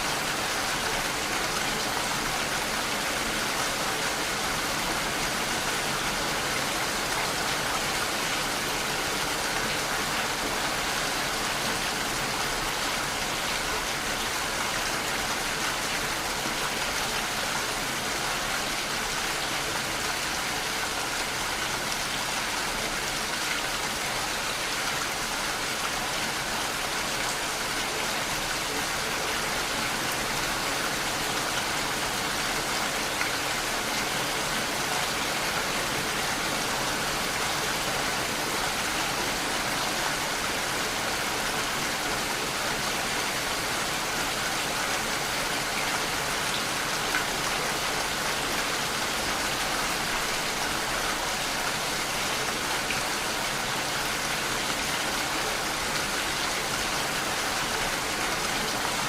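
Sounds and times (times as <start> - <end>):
steady rainfall: 0.0 - 59.0.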